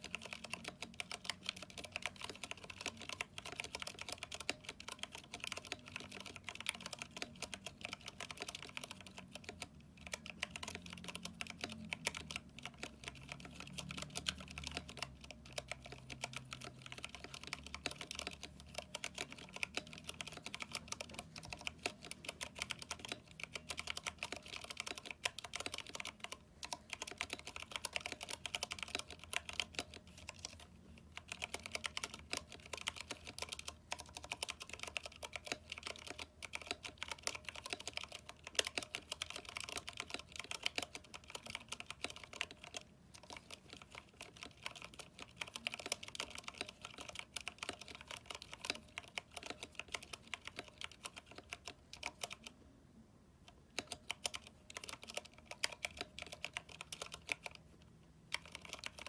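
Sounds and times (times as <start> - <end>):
typing on a mechanical keyboard: 0.0 - 52.6, 53.5 - 59.0.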